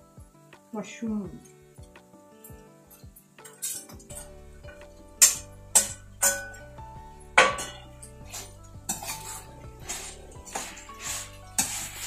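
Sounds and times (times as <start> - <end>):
metal spoon clinking on pan: 2.9 - 4.3, 5.2 - 6.7, 7.4 - 9.4.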